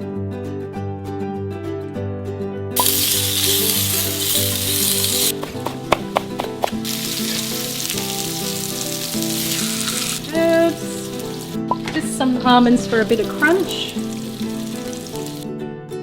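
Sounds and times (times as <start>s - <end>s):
food sizzling in a frying pan: 2.8s - 15.5s.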